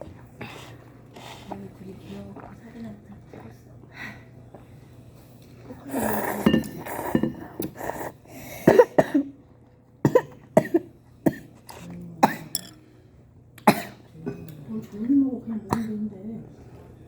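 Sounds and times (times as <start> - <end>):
person coughing: 8.6 - 9.3, 10.1 - 11.5, 13.7 - 14.0.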